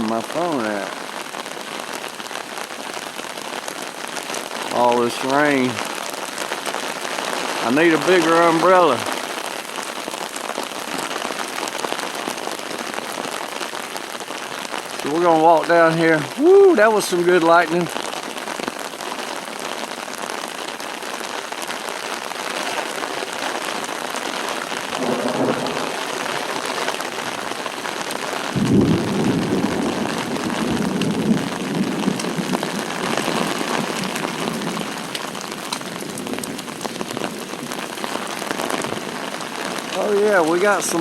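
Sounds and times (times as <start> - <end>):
heavy rain on an umbrella: 0.0 - 41.0
thunder rumbling: 24.6 - 37.3.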